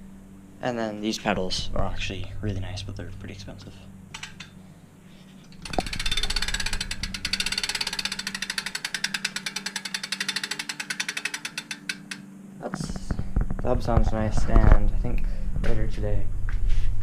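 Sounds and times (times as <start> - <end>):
bike freehub ticking: 5.5 - 12.3.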